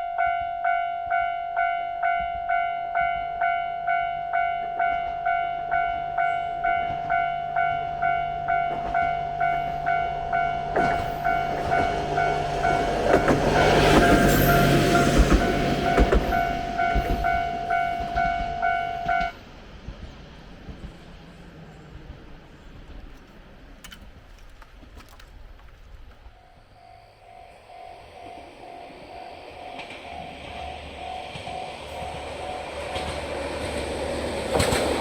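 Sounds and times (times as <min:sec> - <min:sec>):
diesel railcar passing: 0:00.0 - 0:35.0
wheels clicking over rail joints: 0:10.7 - 0:26.5, 0:28.1 - 0:35.0.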